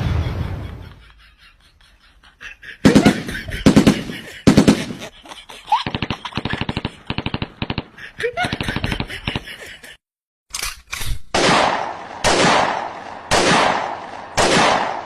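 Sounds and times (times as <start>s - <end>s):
loud bangs: 2.8s - 5.1s.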